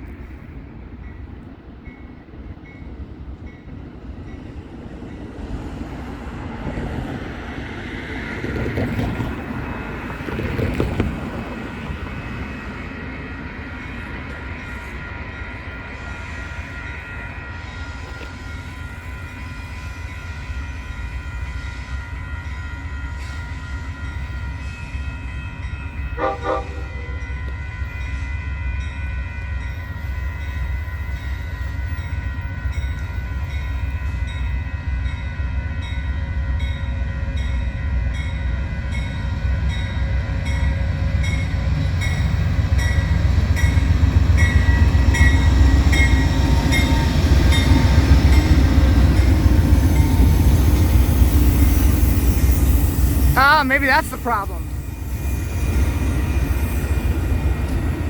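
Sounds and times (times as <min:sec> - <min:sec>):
train rumbling by: 0:00.0 - 0:58.0
short train horn: 0:26.1 - 0:28.0.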